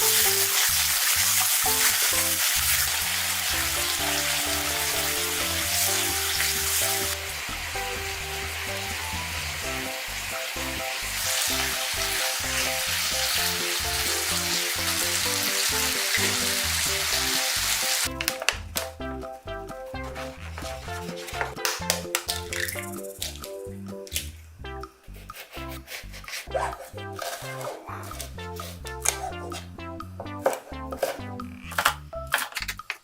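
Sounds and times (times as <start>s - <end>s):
food sizzling in a pan: 0.0s - 18.1s
background music: 0.0s - 33.0s.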